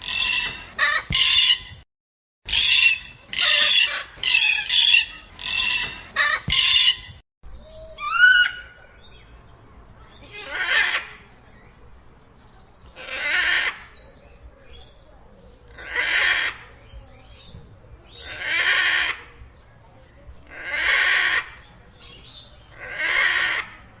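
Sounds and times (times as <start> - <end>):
macaws squawking: 0.0 - 1.8, 2.5 - 7.2, 22.7 - 23.8.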